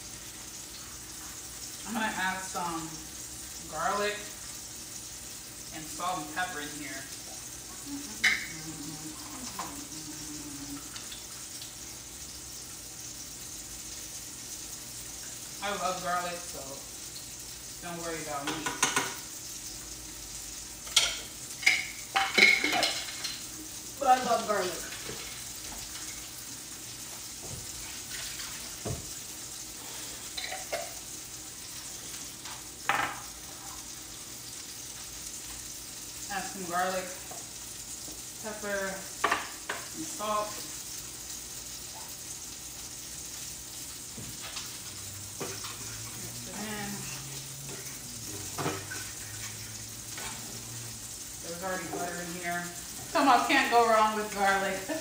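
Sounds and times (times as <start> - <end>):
food sizzling in butter: 0.0 - 55.0
kitchen utensils clinking: 8.1 - 8.6, 18.4 - 19.2, 20.8 - 23.5, 30.2 - 31.0, 44.4 - 50.4.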